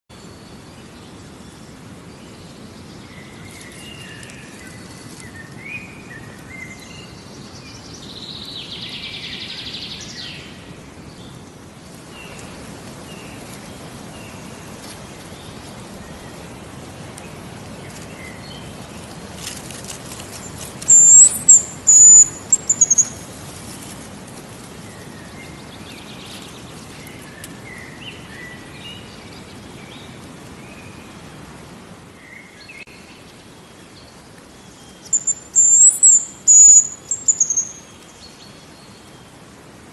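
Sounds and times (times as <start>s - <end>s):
outdoor background noise: 0.1s - 39.9s
small birds calling: 20.1s - 23.3s, 34.9s - 39.0s
grouse whistling: 20.9s - 23.2s, 35.2s - 37.7s.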